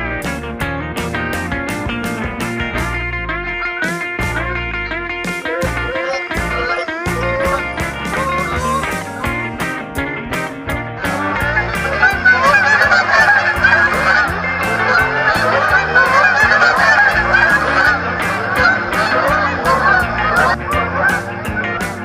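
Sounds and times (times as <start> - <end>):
guitar music: 0.0 - 22.0
geese honking: 3.5 - 9.8, 11.0 - 22.0.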